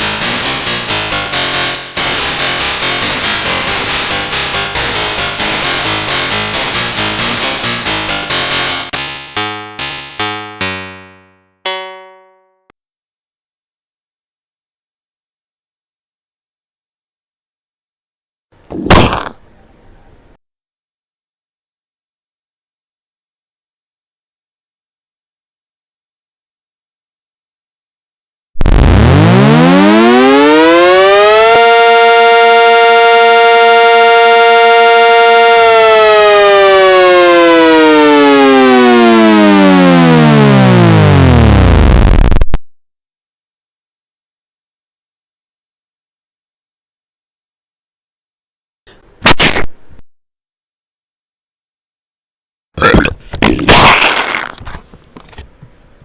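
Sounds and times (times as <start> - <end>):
warning siren wailing: 28.6 - 42.3
synth chords: 28.6 - 42.4.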